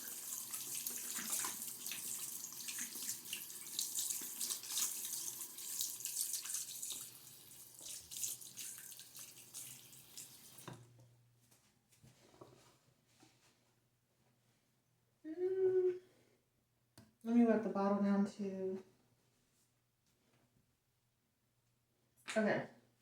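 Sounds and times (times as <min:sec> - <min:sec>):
tap water running into sink: 0:00.0 - 0:10.9.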